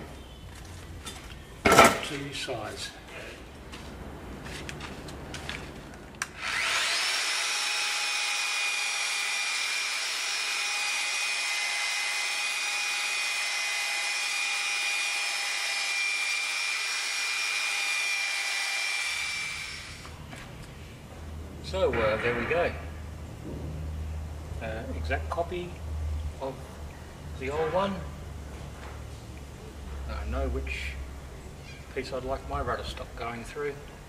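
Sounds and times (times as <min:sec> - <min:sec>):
power tool whining and rasping: 0:06.2 - 0:20.2.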